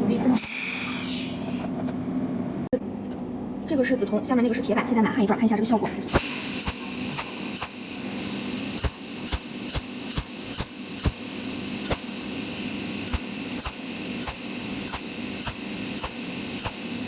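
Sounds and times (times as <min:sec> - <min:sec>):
steady hum and hiss: 0:05.6 - 0:17.0
welding arc cracking: 0:06.1 - 0:17.0.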